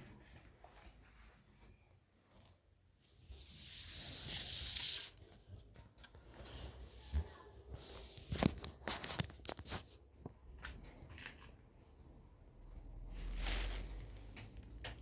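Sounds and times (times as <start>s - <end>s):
fabric rustling: 10.9s - 15.0s.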